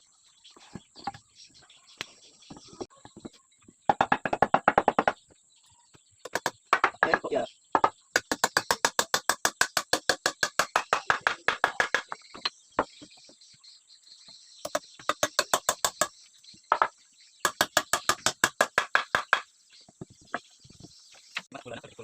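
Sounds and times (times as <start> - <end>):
hammer tapping on wood: 3.9 - 5.2, 6.3 - 12.9, 14.6 - 16.1, 16.7 - 19.4.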